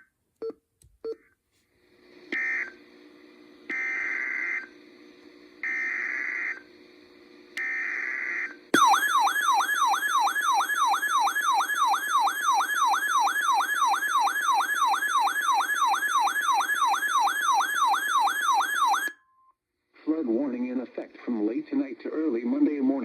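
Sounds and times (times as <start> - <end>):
electronic siren-like alert tone: 8.8 - 19.2.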